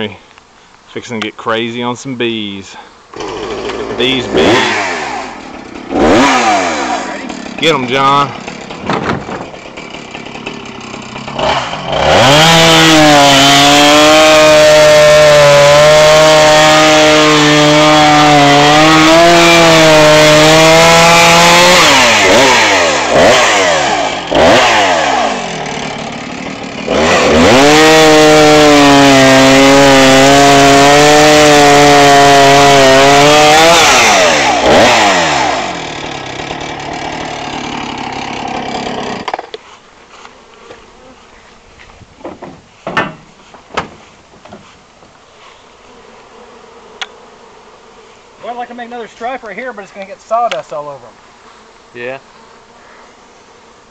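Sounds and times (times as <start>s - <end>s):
chainsaw cutting tree trunk: 3.1s - 40.3s.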